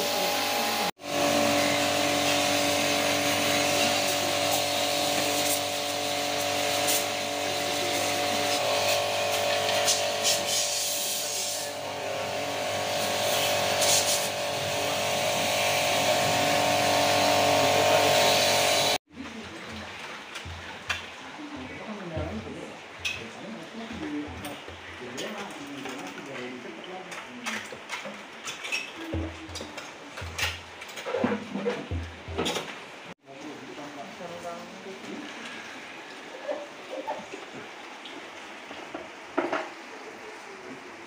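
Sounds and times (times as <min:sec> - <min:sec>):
machine motor humming and hissing: 0:00.0 - 0:19.0.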